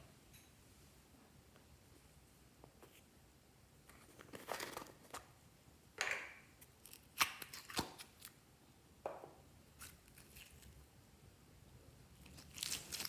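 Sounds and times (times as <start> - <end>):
slime rustling: 12.2 - 13.0.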